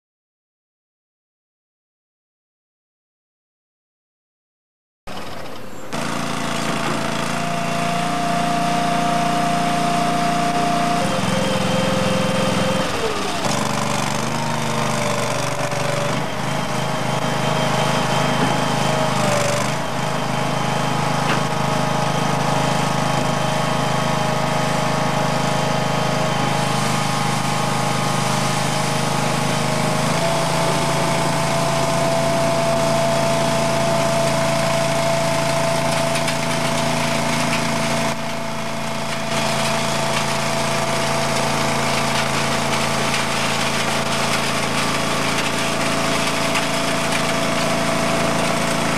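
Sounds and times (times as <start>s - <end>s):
loader engine running: 5.2s - 48.9s.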